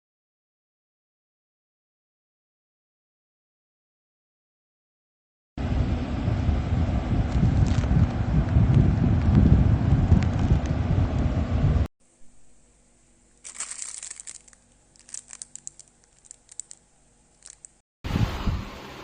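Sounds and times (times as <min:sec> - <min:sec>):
low rumble of wind or traffic: 0:05.6 - 0:19.0
crinkling and clicking from handling: 0:13.3 - 0:17.8.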